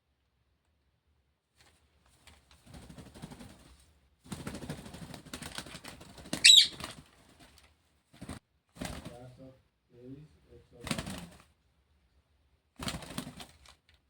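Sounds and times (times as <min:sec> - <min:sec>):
parrot fluttering and rustling: 0:01.5 - 0:09.2, 0:12.8 - 0:14.0
parrot screech: 0:06.4 - 0:06.8.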